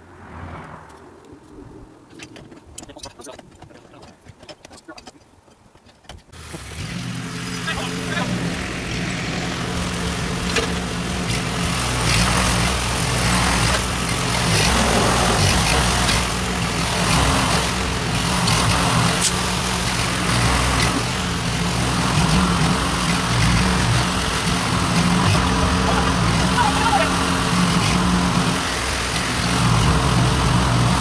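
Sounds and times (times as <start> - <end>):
engine running: 6.3 - 31.0.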